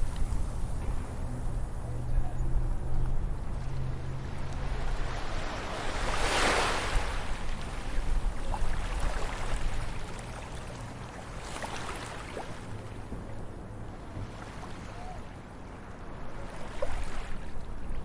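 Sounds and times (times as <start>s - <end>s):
small water splashes and trickles: 3.5s - 13.4s, 16.3s - 18.0s
waves washing in with hiss: 3.9s - 12.8s.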